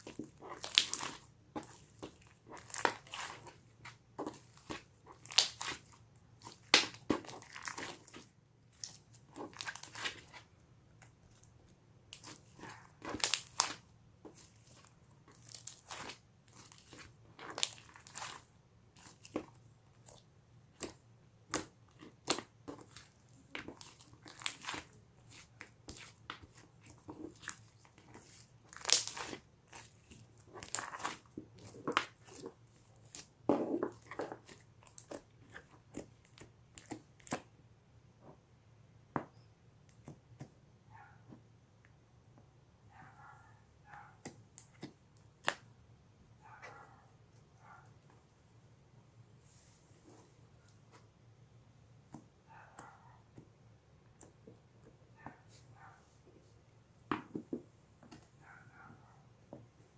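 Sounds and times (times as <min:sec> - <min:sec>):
slime squished by hand: 0:00.0 - 0:10.4, 0:12.1 - 0:37.5.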